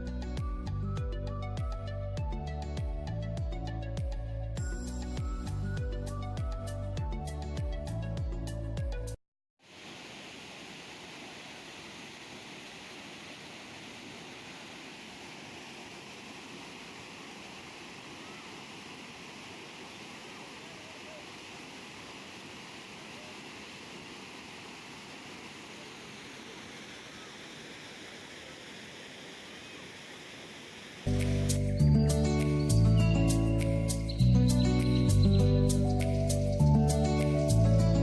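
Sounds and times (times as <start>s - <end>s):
waterfall rushing: 9.7s - 31.6s.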